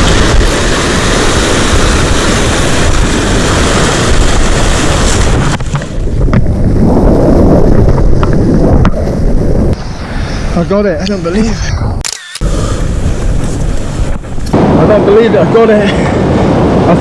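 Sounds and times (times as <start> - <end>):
surf washing on rocks: 0.0 - 6.9
wind buffeting microphone: 0.0 - 17.0
sharp clicks: 12.0 - 12.5.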